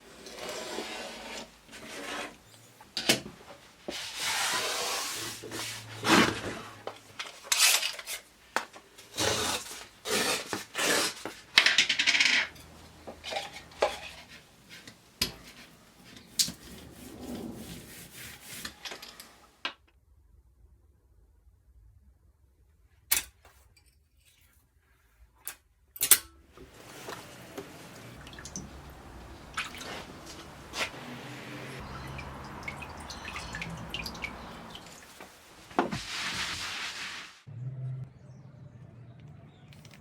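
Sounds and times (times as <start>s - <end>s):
tools scraping and rubbing: 0.1s - 3.0s, 3.9s - 8.3s, 9.0s - 19.4s.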